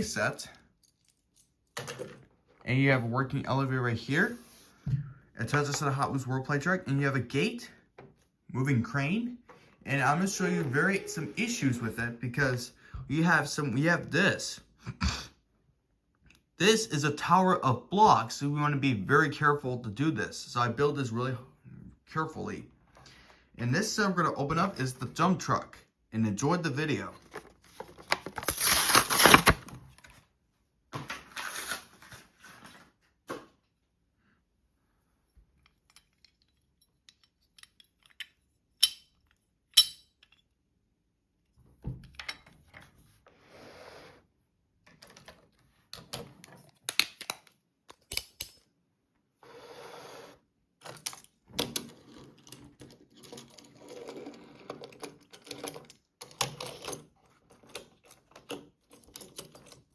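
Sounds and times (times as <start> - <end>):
plastic packaging crinkling: 27.8 - 29.8.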